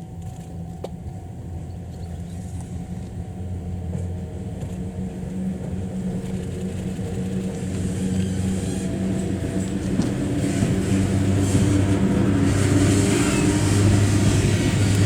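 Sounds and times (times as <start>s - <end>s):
model train rumbling: 2.3s - 15.0s.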